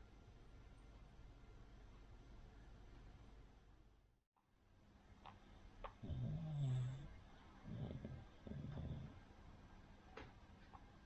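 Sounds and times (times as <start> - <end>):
dog snoring faintly: 5.8 - 9.3.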